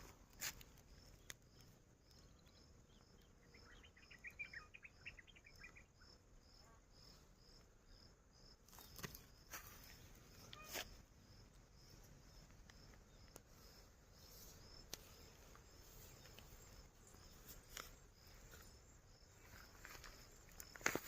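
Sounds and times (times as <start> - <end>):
cricket chirping: 0.1 - 21.0
faint clicks: 12.4 - 13.5.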